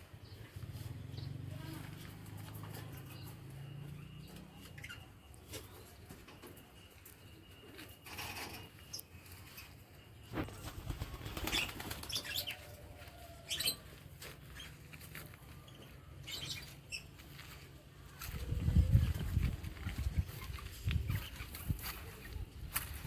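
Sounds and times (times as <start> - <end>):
birds flapping wings: 10.4 - 12.6.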